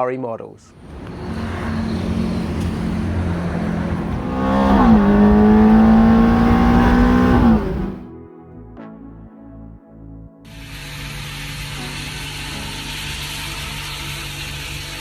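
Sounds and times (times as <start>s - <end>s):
car engine accelerating hard: 0.8s - 8.1s.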